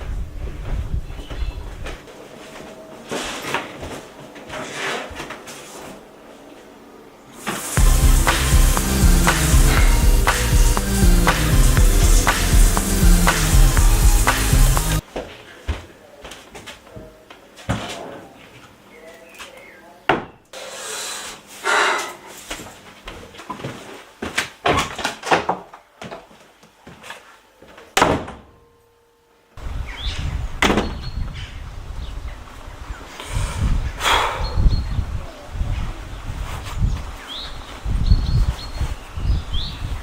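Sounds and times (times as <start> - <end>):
scraping or rustling noises: 1.7 - 6.1, 36.4 - 36.9
steady low rumble: 7.8 - 15.0.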